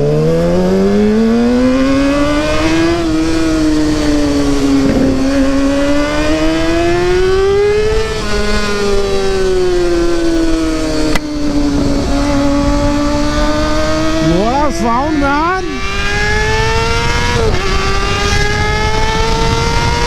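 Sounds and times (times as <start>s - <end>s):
motorcycle engine running: 0.0s - 20.0s.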